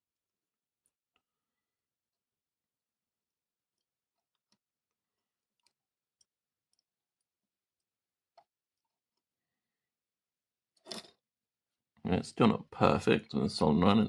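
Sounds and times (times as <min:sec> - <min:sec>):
faint clicks and taps of tools: 0:03.7 - 0:09.3.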